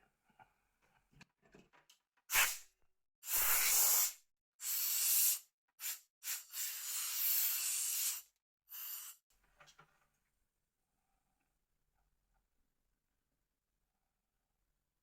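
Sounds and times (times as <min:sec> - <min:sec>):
short hissing bursts of spray: 0:02.3 - 0:09.2.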